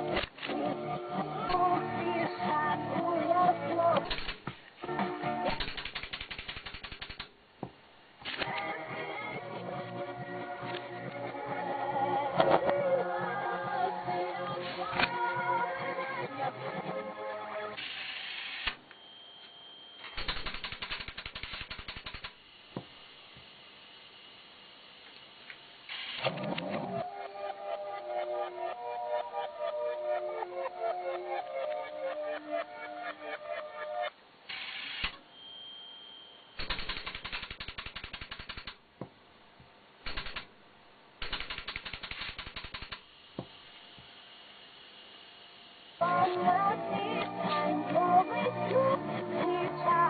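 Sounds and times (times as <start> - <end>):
rapid clicks: 5.5 - 7.3, 20.1 - 22.4, 36.6 - 38.8, 40.1 - 40.5, 41.2 - 43.1
high whistle: 35.2 - 36.6.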